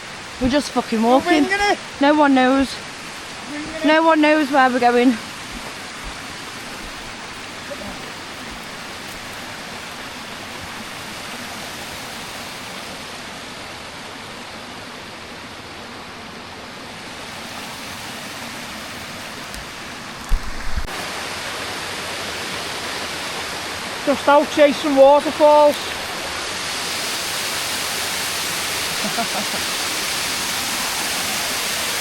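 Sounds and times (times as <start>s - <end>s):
stream water rushing: 0.0s - 32.0s.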